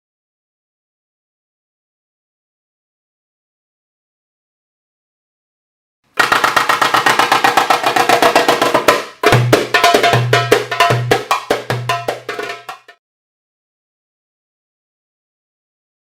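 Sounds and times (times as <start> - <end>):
rapid drum and wood block strikes: 6.2 - 13.0.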